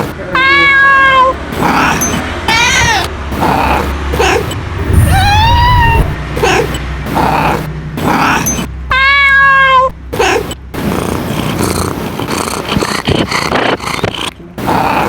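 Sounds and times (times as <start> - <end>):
cat meowing: 0.0 - 10.6.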